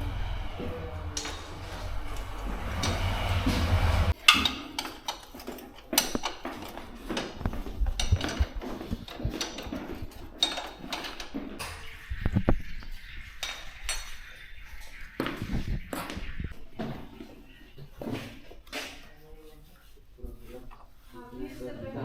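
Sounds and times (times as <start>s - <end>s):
low hum: 0.0s - 4.2s
metal tools clinking: 1.1s - 11.6s.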